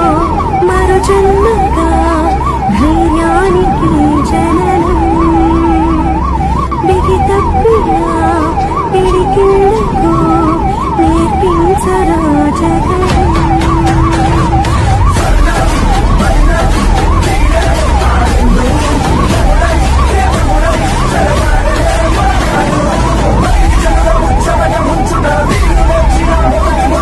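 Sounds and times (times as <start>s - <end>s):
ambulance siren warbling: 0.0s - 27.0s
low rumble of moving vehicle: 0.0s - 27.0s.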